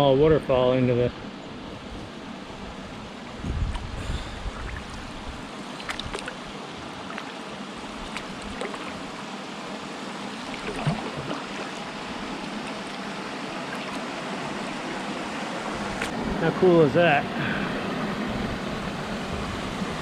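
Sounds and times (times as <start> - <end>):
waterfall splashing trickle: 10.2 - 15.7.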